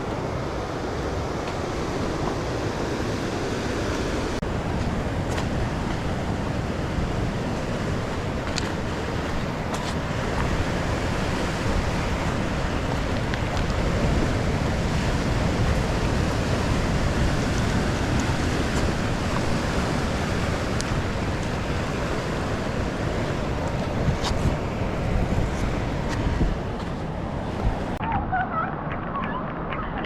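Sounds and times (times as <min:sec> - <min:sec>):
waves breaking on a beach: 0:00.0 - 0:28.0.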